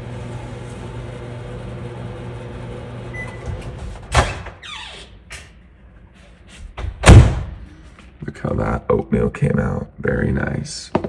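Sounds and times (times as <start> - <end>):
microwave oven humming: 0.0 - 4.6
microwave beep: 3.1 - 3.6.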